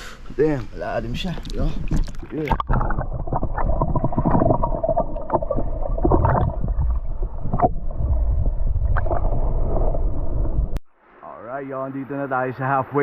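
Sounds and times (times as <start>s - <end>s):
low river rumble: 0.7s - 11.6s
water splashing around wading legs: 1.3s - 8.1s.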